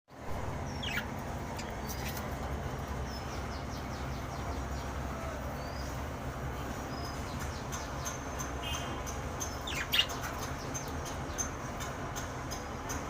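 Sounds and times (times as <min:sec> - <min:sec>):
budgerigars chirping: 0:00.7 - 0:01.1, 0:08.0 - 0:11.5.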